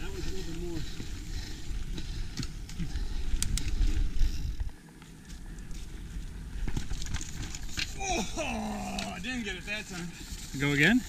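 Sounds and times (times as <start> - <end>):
bike clicks and rattles: 0.0 - 8.0
wind rumble on microphone: 0.0 - 8.0
bike tyre noise on dirt: 0.0 - 11.0.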